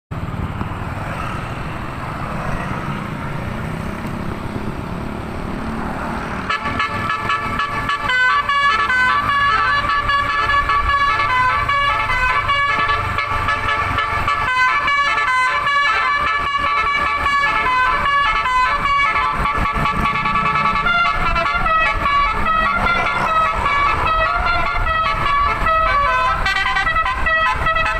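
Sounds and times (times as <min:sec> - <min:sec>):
bus engine rumble: 0:00.1 - 0:27.9
road noise: 0:00.1 - 0:27.9
musical bus horn melody: 0:06.4 - 0:27.9.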